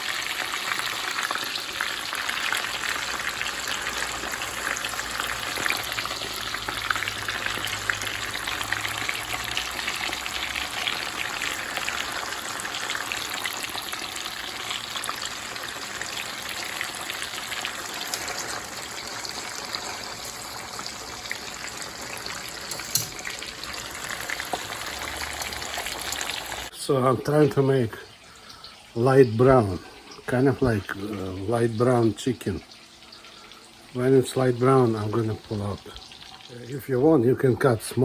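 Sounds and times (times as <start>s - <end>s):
tofu sizzling in hot oil: 0.0s - 26.7s.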